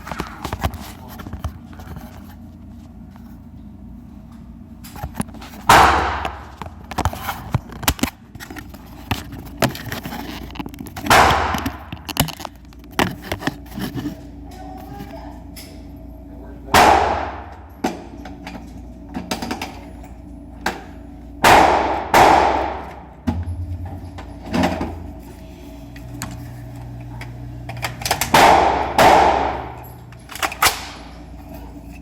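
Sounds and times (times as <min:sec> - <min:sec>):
rifle shots: 0:21.4 - 0:22.9, 0:28.3 - 0:29.8.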